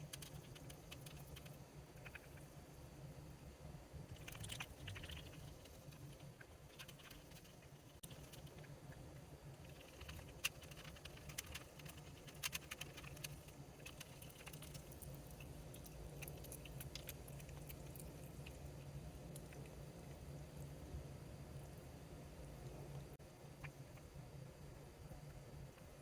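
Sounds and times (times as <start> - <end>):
cat licking and chewing: 0.0 - 2.5, 4.1 - 21.0.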